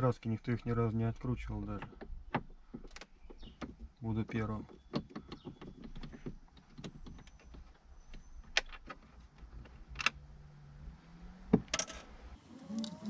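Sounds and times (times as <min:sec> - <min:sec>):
screwdriver and screws clicking: 0:12.4 - 0:13.0.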